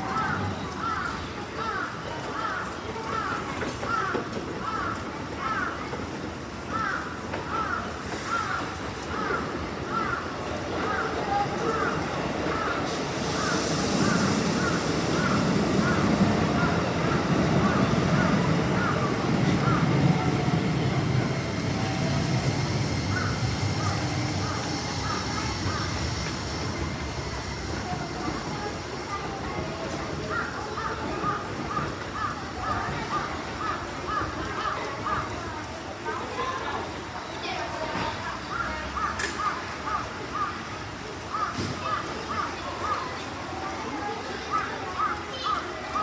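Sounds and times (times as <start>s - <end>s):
electric train rumble and hiss: 8.4s - 35.4s.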